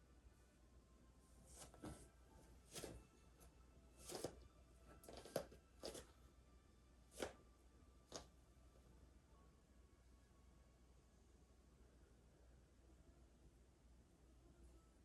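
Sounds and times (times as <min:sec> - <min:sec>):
rustling on a mat: 0:01.4 - 0:03.1.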